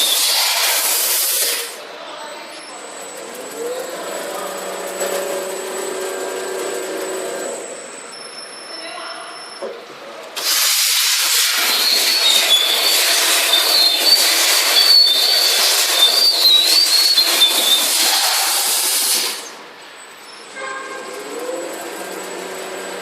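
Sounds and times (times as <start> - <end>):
cutting machine scraping steel sheet: 0.0 - 1.8, 10.4 - 19.6.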